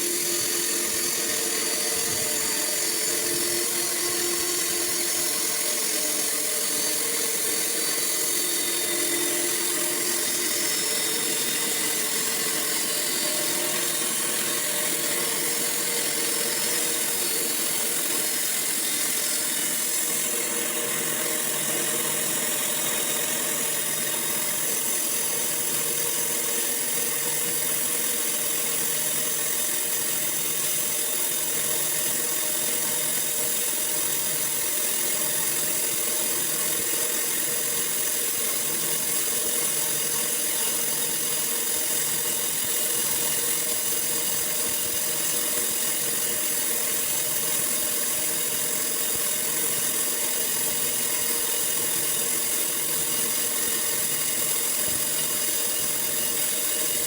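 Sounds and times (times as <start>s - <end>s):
sawmill machine drone: 0.0s - 32.2s
saw whining: 0.0s - 57.0s.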